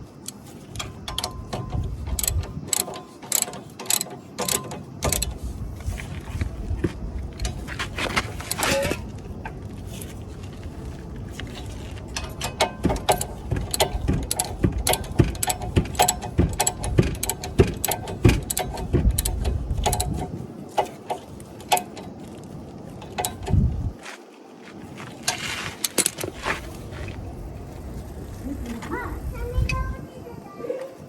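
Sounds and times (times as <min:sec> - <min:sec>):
metallic clicks of hand tools: 0:00.2 - 0:05.5, 0:11.5 - 0:22.2, 0:23.0 - 0:23.7
low background rumble: 0:04.2 - 0:24.0, 0:26.2 - 0:30.6.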